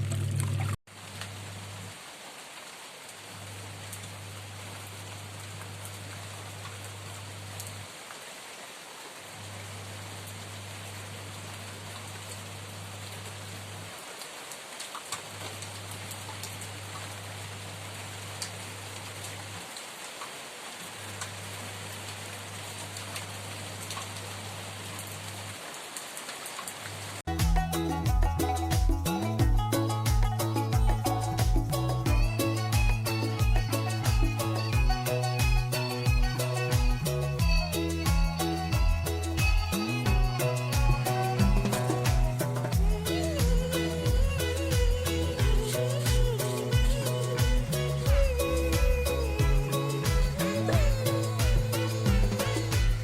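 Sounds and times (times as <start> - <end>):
low steady hum: 0.0 - 1.9
steady rain falling: 0.0 - 53.0.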